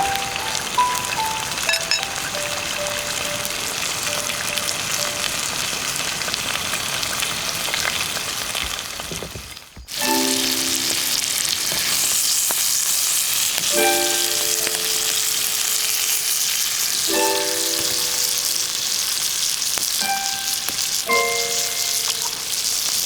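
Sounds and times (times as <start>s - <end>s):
background music notes: 0.0s - 5.8s, 10.0s - 11.9s, 13.6s - 22.8s
wood fire sizzling and crackling: 0.0s - 23.0s
sharp pops from fire: 18.7s - 21.1s.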